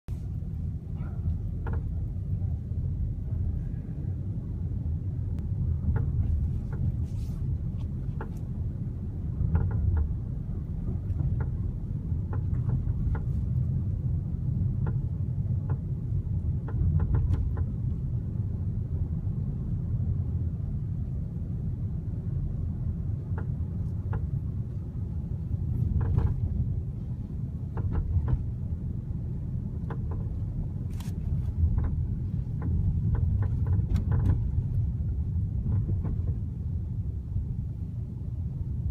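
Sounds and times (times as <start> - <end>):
car engine rumbling: 0.0 - 38.9
engine clicks and knocks: 0.5 - 2.4, 5.3 - 18.2, 23.1 - 37.9.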